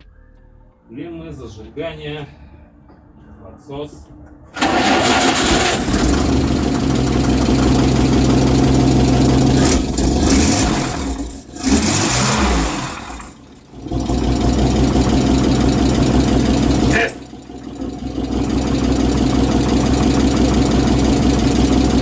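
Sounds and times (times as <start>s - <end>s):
petrol engine starting and revving: 4.6s - 22.0s.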